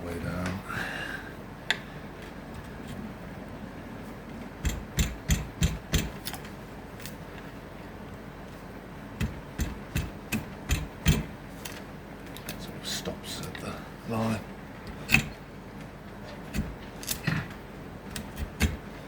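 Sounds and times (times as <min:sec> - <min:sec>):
hand tool knocking into wood: 0:04.6 - 0:06.2, 0:09.2 - 0:11.3.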